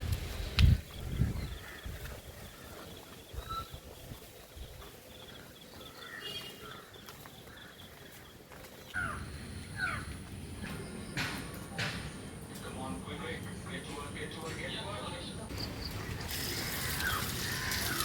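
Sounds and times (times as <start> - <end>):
bird chirps: 1.0 - 11.6.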